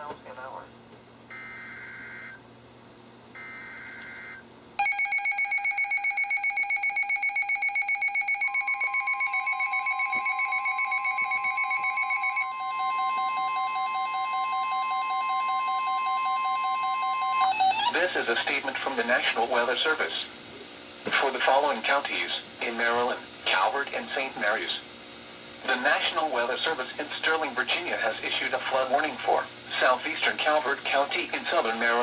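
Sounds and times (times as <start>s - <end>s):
steady warning alarm tone: 1.3s - 2.4s, 3.4s - 18.1s.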